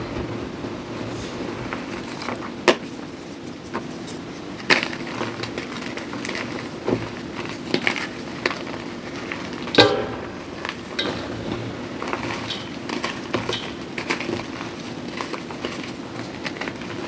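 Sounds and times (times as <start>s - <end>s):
steady low hum: 0.0s - 17.0s
objects clicking and crackling: 3.6s - 17.0s
sharp crack: 9.6s - 15.2s.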